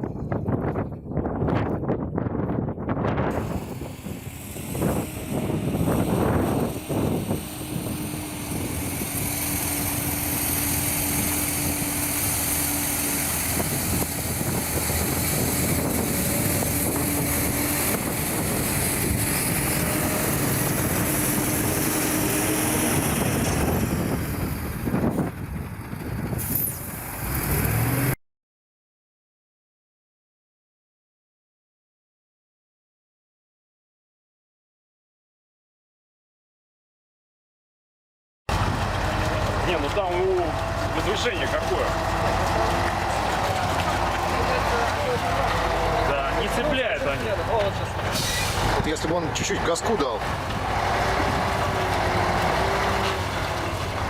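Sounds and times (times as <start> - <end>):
vehicle engine running: 3.3 - 28.1, 38.5 - 54.0.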